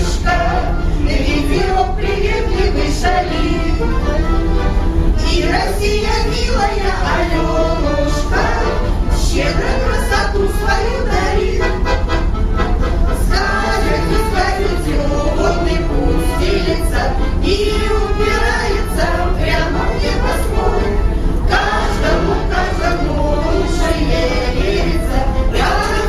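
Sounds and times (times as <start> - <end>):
group singing in chorus: 0.0 - 26.0.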